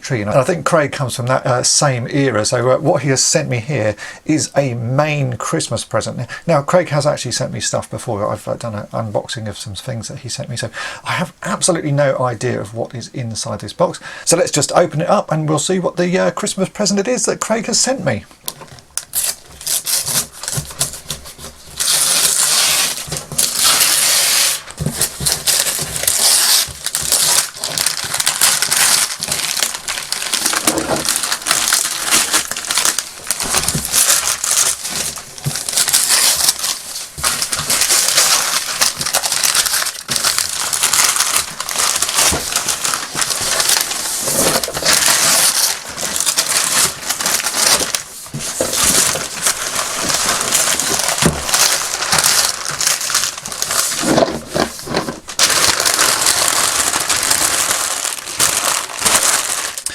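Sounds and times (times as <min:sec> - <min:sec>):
wrapping paper tearing and rustling: 0:18.5 - 0:59.9.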